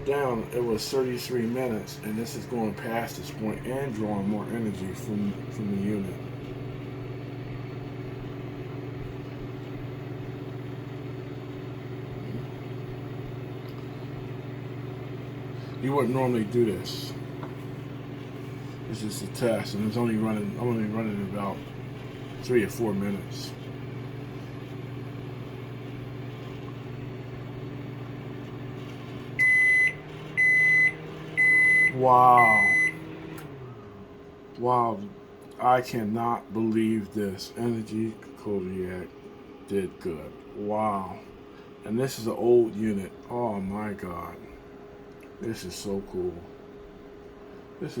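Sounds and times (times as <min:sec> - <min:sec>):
microwave oven electrical hum: 0:00.0 - 0:48.0
microwave high beeps: 0:29.3 - 0:33.1.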